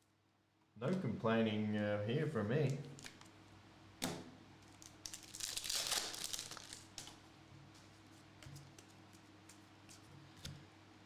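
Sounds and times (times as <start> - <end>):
plastic wrapper crinkling: 4.6 - 7.2.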